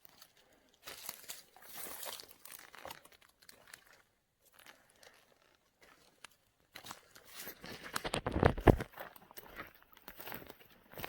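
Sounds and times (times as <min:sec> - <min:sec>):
footsteps crunching through dry leaves: 0:00.0 - 0:05.1.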